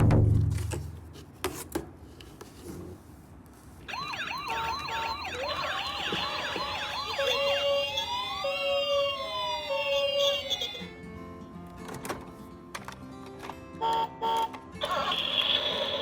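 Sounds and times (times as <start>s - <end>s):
rising and falling siren wail: 3.9s - 10.8s
toy ambulance sirens wailing: 3.9s - 10.9s, 13.8s - 16.0s
two-tone hi-lo siren: 3.9s - 10.9s.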